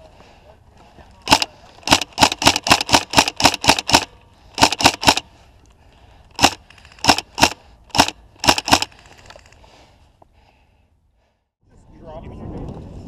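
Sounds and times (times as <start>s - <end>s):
airsoft rifle firing single shots: 1.2s - 5.2s, 6.4s - 8.9s.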